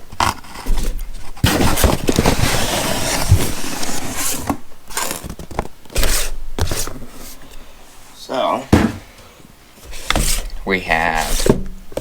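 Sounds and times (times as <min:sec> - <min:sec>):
packing material rustling: 0:00.1 - 0:07.4.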